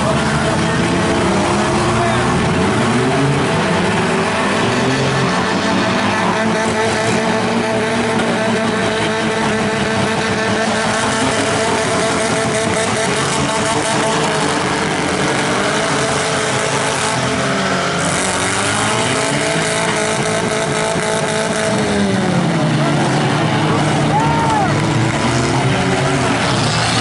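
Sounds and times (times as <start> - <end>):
car engines revving: 0.0 - 27.0.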